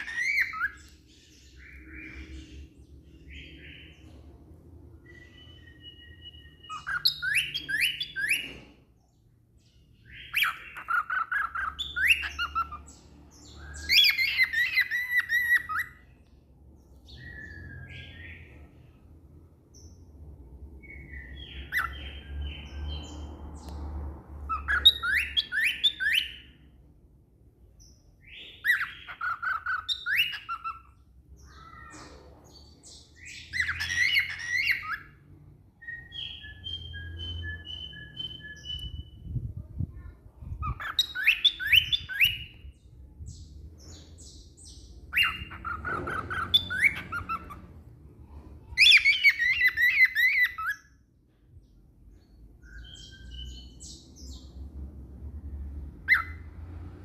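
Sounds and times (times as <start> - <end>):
cockatiel whistling: 0.0 - 0.8, 5.0 - 8.5, 33.5 - 35.1.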